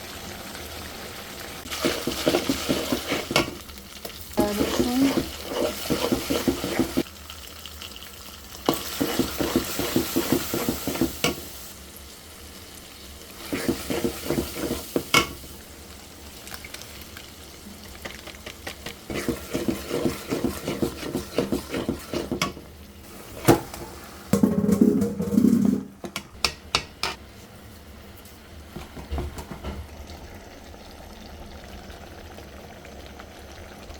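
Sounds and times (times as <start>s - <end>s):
chicken sizzling in a pot: 0.0s - 33.9s
spoon scraping a pot: 1.8s - 3.5s, 4.4s - 7.0s, 18.8s - 22.6s.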